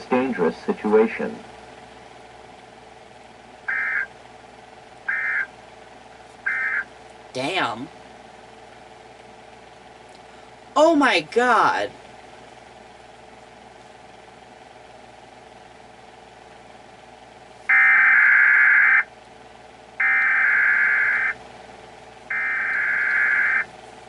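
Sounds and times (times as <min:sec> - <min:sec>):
low steady hum: 0:00.0 - 0:24.0
harsh data buzz bursts: 0:03.7 - 0:04.1, 0:05.1 - 0:05.5, 0:06.5 - 0:06.9, 0:17.7 - 0:19.1, 0:20.0 - 0:21.4, 0:22.3 - 0:23.7.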